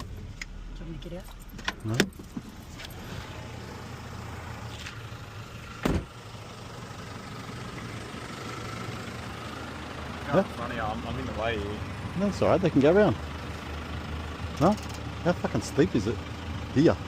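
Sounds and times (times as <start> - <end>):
car engine idling: 0.0 - 17.0
sharp thump: 5.8 - 6.1.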